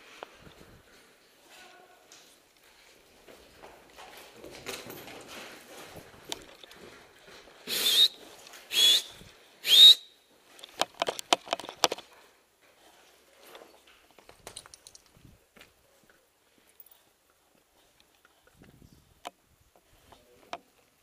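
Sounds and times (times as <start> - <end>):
short loud whistle blasts: 7.7 - 10.2.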